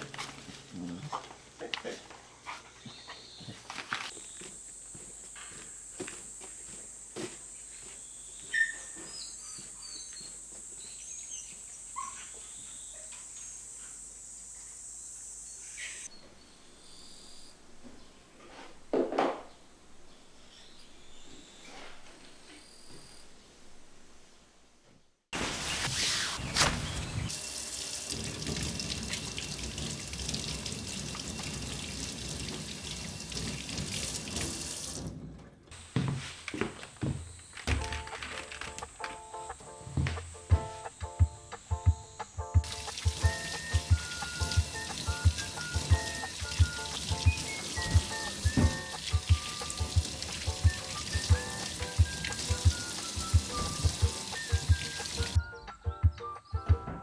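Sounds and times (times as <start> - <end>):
insect drone: 4.1 - 8.4, 12.8 - 17.5, 35.8 - 48.4
tap water running into sink: 26.7 - 35.2, 42.6 - 55.4
bird chirps: 38.9 - 57.0.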